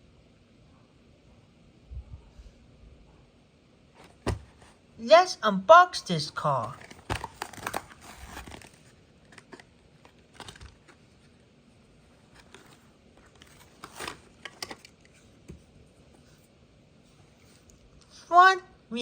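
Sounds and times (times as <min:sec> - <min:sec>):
blister pack crinkling and tearing: 0:06.6 - 0:10.9.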